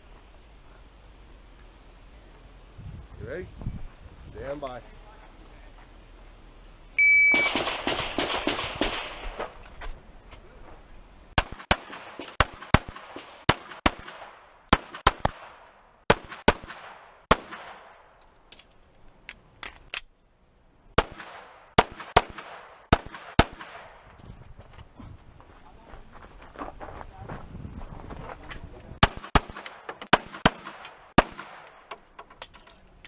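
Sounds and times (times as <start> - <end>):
shot timer beep: 7.0 - 7.6
pistol shots: 7.3 - 9.4, 11.4 - 18.0, 21.0 - 24.0, 29.0 - 31.9.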